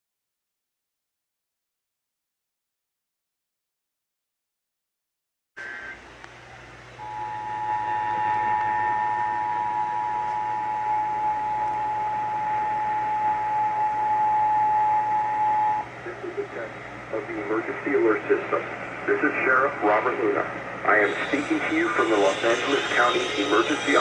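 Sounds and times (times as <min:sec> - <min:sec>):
radio hiss: 0:05.6 - 0:24.0
low hum: 0:05.9 - 0:24.0
high data tones: 0:06.9 - 0:16.2, 0:20.8 - 0:24.0
two-tone alert signal: 0:07.0 - 0:15.8.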